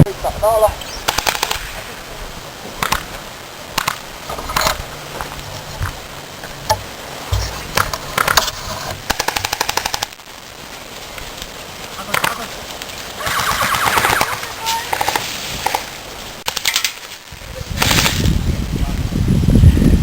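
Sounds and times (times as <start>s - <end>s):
airsoft guns firing: 1.1s - 1.8s, 9.0s - 10.1s.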